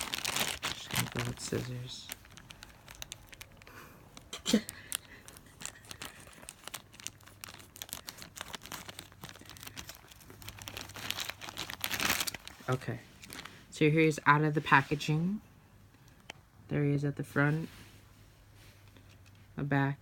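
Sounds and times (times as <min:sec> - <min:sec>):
plastic bag crinkling: 0:00.0 - 0:13.6.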